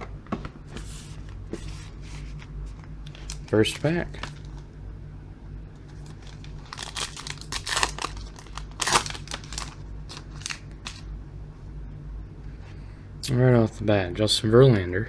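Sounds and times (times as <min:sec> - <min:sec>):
faint low hum: 0:00.0 - 0:15.0
wrapper tearing and crinkling: 0:02.1 - 0:04.6, 0:05.9 - 0:11.0.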